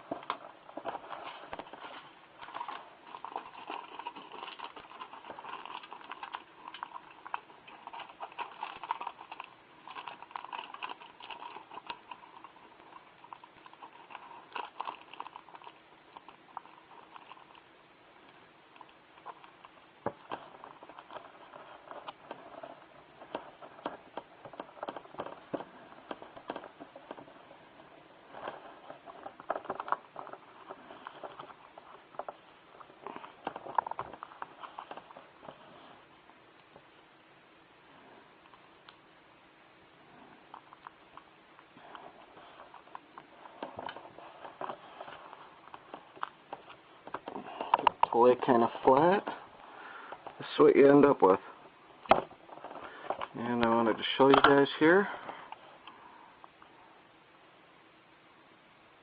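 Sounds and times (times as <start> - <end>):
aluminum foil crinkling: 0.0 - 36.1.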